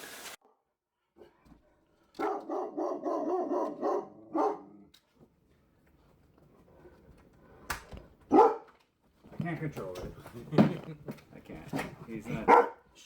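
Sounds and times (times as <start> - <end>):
dog barking: 2.2 - 4.9, 8.3 - 8.7, 12.3 - 12.8.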